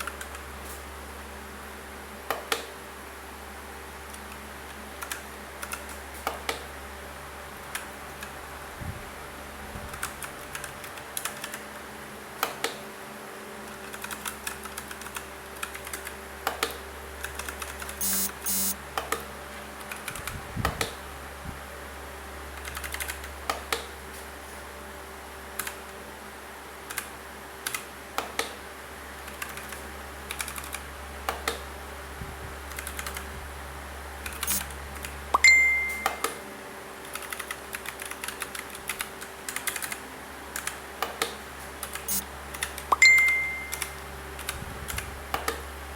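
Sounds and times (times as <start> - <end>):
mechanical keyboard typing: 9.9 - 11.6, 13.8 - 16.2, 17.2 - 18.8, 22.6 - 23.3, 29.3 - 30.8, 32.7 - 33.3, 34.2 - 36.4, 37.0 - 40.0, 40.6 - 40.8, 41.8 - 45.0.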